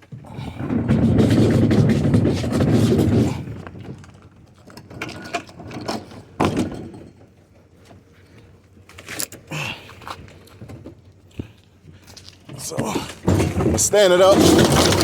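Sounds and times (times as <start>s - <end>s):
appliance scraping rumble: 0.2s - 6.4s, 12.6s - 15.0s.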